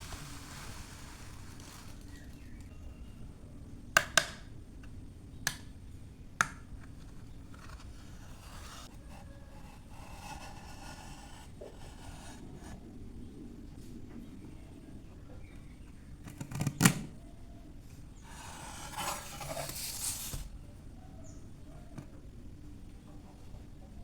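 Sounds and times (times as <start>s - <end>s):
faint scraping: 18.2s - 20.6s.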